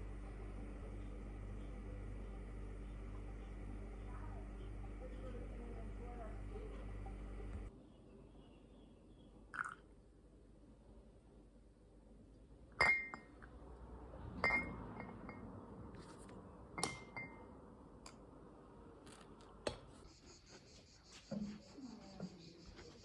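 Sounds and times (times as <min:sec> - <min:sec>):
tableware clinking: 0:12.8 - 0:13.3, 0:14.4 - 0:15.4.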